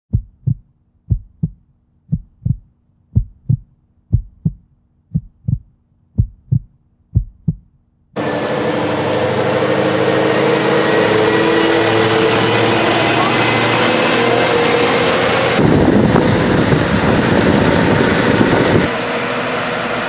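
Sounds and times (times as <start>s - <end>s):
heartbeat-like double thumps: 0.1s - 7.8s
heavy truck diesel engine running: 8.2s - 20.0s.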